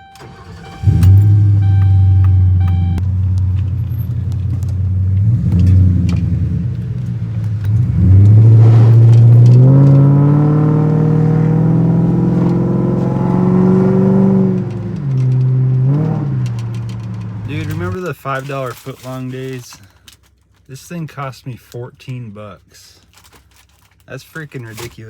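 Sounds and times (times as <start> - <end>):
car engine accelerating: 0.0 - 18.0
car engine revving: 0.1 - 18.0.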